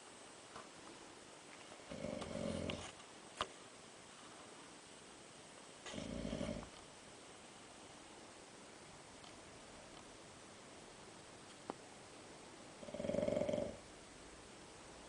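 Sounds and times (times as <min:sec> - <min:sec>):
man snoring: 0:01.9 - 0:02.9, 0:05.9 - 0:06.7, 0:12.8 - 0:13.8.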